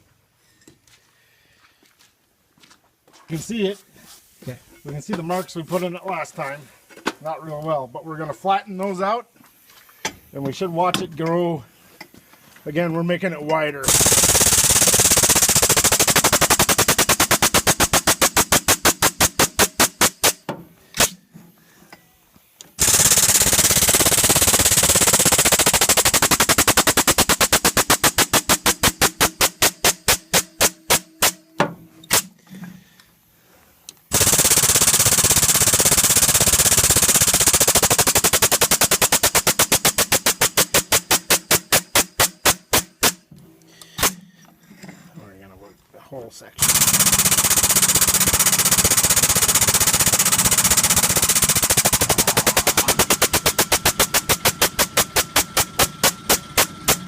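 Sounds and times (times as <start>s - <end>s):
power hammer pounding steel: 46.6s - 57.0s.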